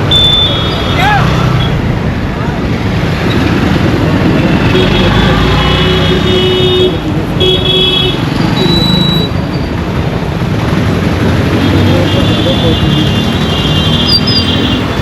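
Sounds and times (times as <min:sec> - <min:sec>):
vehicle horns: 0:00.0 - 0:01.8, 0:04.3 - 0:09.3, 0:11.6 - 0:15.0
road traffic rumbling: 0:00.0 - 0:15.0
high beep: 0:08.5 - 0:09.3.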